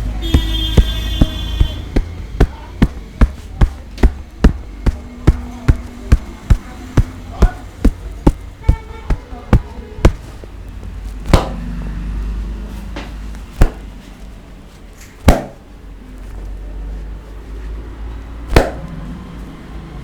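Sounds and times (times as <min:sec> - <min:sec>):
hand slaps on head: 0:11.3 - 0:11.6, 0:13.6 - 0:13.8, 0:15.3 - 0:15.6, 0:18.5 - 0:18.8.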